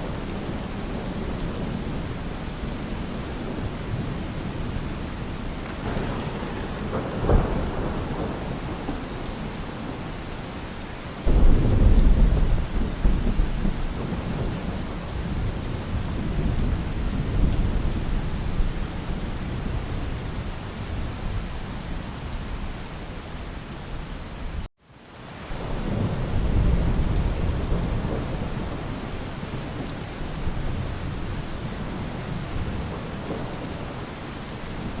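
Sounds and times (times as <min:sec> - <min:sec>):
rolling thunder: 0:00.0 - 0:10.1, 0:11.2 - 0:22.8
steady rain: 0:00.0 - 0:35.0.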